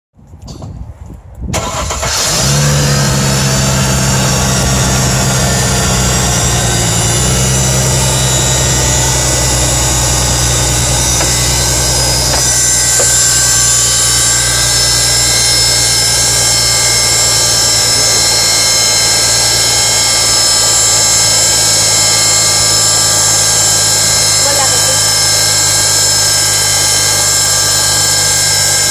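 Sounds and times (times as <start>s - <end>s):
car engine starting and idling: 1.6s - 28.9s
steady high whine: 1.6s - 28.9s.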